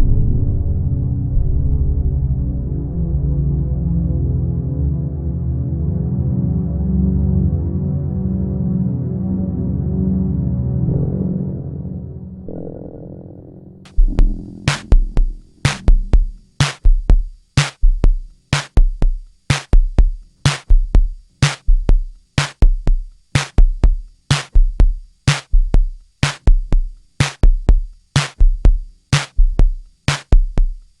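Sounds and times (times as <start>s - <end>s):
kick drum thumps: 13.9s - 31.0s
snare or clap hits: 15.6s - 15.9s, 16.6s - 16.9s, 17.6s - 17.8s, 18.5s - 18.8s, 19.5s - 19.8s, 20.4s - 20.7s, 21.4s - 21.7s, 22.4s - 22.6s, 23.4s - 23.6s, 24.3s - 24.6s, 25.3s - 25.5s, 26.2s - 26.5s, 27.2s - 27.5s, 28.2s - 28.4s, 29.1s - 29.4s, 30.1s - 30.4s.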